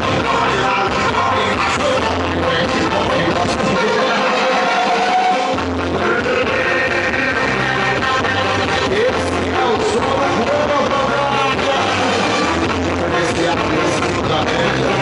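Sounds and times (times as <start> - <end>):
live band music: 0.0 - 15.0
person singing: 0.0 - 15.0.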